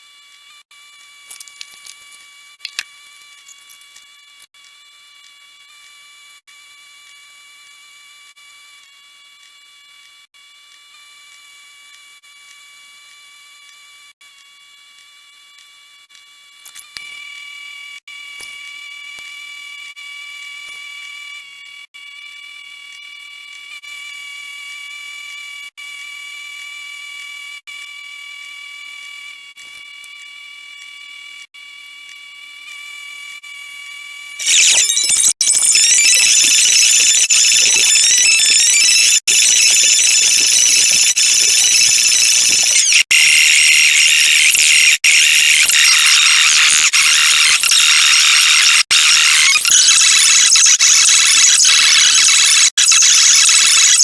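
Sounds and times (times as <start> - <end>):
high whining tones: 34.4 - 54.0
high-pitched electronic music: 34.4 - 54.0.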